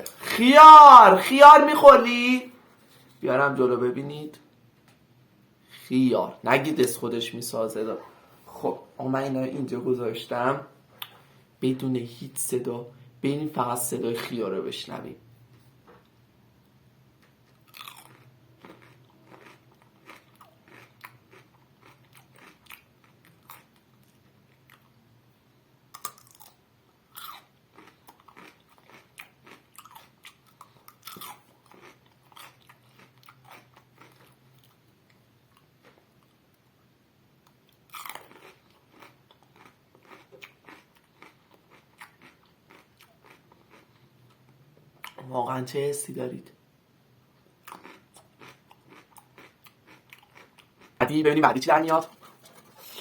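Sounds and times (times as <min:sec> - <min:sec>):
chewing raw cucumber: 0:17.5 - 0:25.0, 0:25.9 - 0:36.5, 0:37.4 - 0:45.3, 0:47.6 - 0:51.0.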